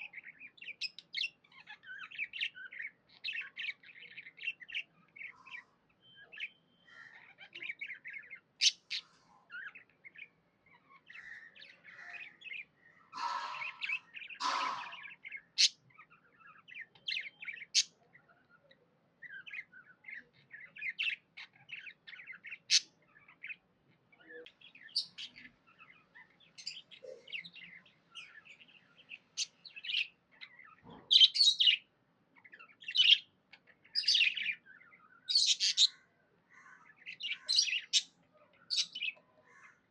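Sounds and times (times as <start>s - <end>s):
budgerigars chirping: 0.0s - 10.2s, 10.8s - 18.0s, 24.2s - 36.0s, 36.6s - 39.9s
harsh bird calls: 0.0s - 39.9s.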